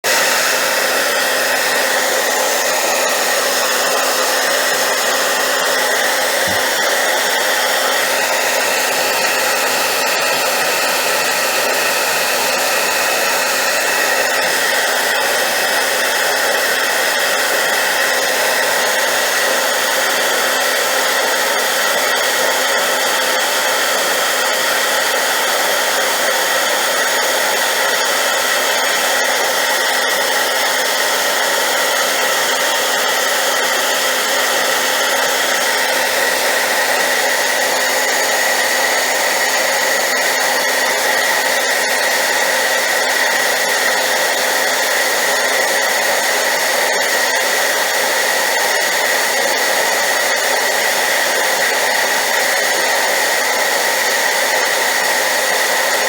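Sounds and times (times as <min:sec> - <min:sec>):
hair dryer running: 0:00.0 - 0:56.0.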